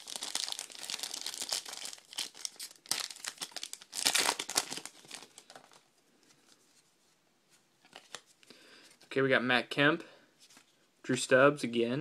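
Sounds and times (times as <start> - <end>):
plastic wrapping crinkling and tearing: 0.0 - 5.9.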